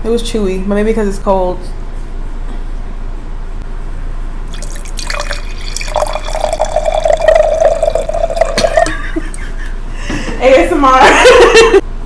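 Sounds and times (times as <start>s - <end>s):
liquid gurgling pour: 4.5s - 8.9s.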